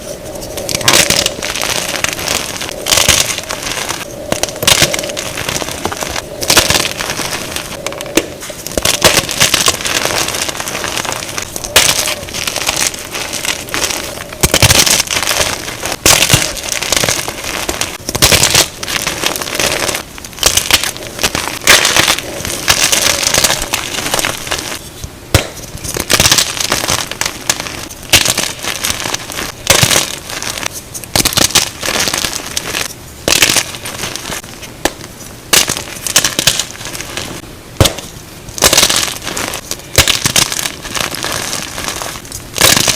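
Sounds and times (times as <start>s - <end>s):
chalk blocks crunching: 0.0s - 42.9s.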